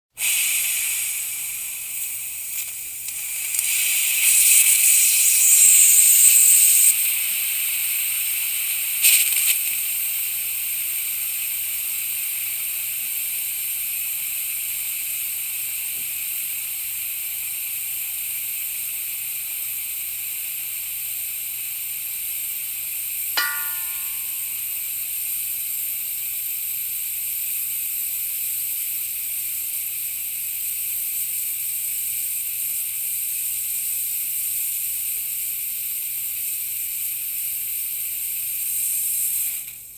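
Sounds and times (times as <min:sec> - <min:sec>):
gas hissing from tank: 0:00.1 - 0:39.9
ringing tick: 0:23.4 - 0:24.6.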